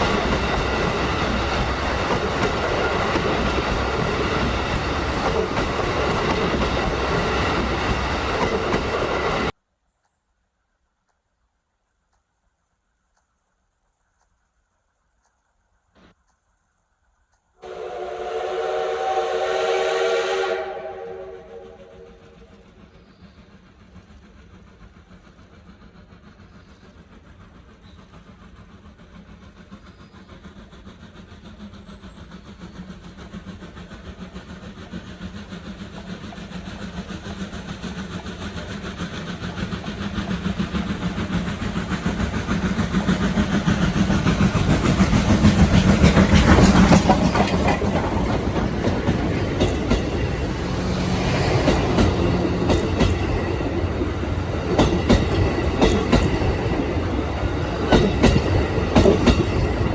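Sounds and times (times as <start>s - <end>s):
carriages clicking over rail joints: 0.0s - 9.5s, 22.1s - 59.9s
steam locomotive passing: 0.0s - 9.6s, 17.6s - 59.9s.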